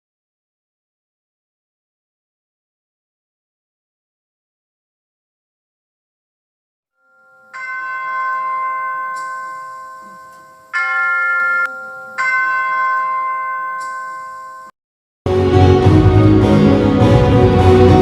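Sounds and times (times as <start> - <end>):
bell ringing: 7.0 - 14.8.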